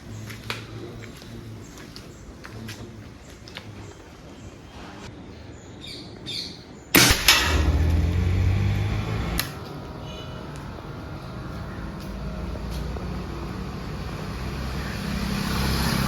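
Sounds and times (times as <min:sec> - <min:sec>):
birds chirping: 0:00.0 - 0:16.0
air rifle shot: 0:07.0 - 0:08.4.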